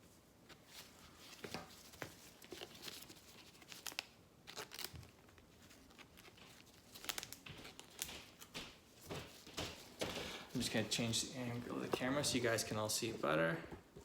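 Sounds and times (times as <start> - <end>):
foil wrappers crinkling and tearing: 0.7 - 10.8.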